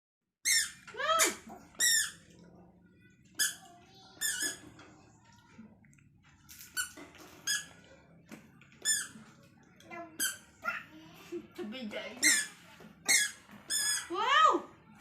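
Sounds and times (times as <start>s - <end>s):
squeaky sandals squeaking: 0.4s - 2.2s, 3.4s - 3.6s, 4.2s - 4.6s, 6.8s - 7.8s, 8.8s - 9.2s, 12.2s - 14.1s.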